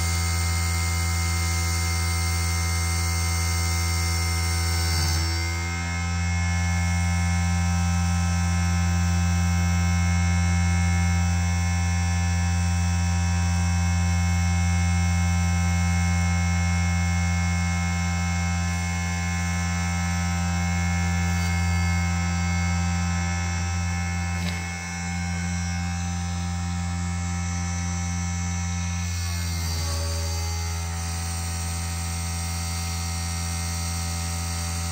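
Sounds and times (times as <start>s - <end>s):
steady whining tones: 18.3s - 31.5s
lathe motor hum: 18.3s - 34.9s.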